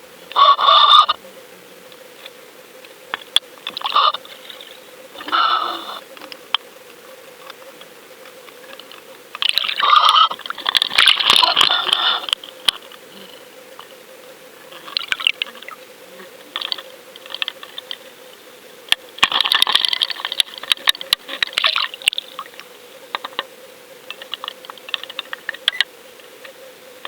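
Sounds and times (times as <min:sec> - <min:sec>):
faint steady hum: 0:00.0 - 0:27.0
water swishing and gurgling: 0:09.4 - 0:12.3, 0:19.2 - 0:22.6.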